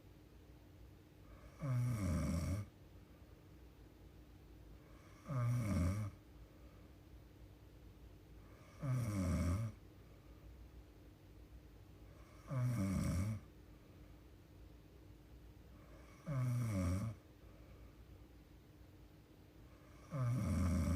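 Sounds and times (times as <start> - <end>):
woman snoring: 1.3 - 2.7, 4.9 - 6.2, 8.5 - 9.8, 12.2 - 13.5, 15.8 - 17.2, 19.8 - 20.9.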